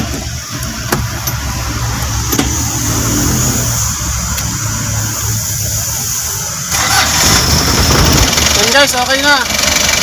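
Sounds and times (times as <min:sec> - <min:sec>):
diesel engine starting and running: 0:00.0 - 0:10.0.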